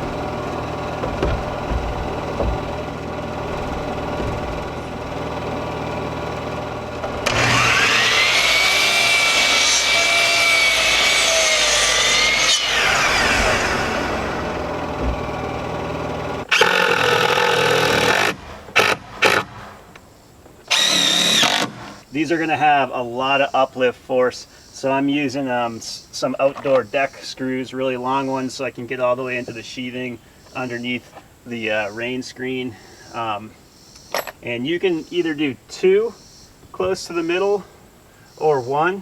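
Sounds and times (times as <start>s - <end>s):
steady hum: 0.0s - 10.1s, 12.2s - 16.6s
power drill driving screws: 0.0s - 15.6s, 16.5s - 19.5s, 20.7s - 22.0s
electric power saw cutting wood: 0.0s - 19.7s, 20.7s - 22.0s.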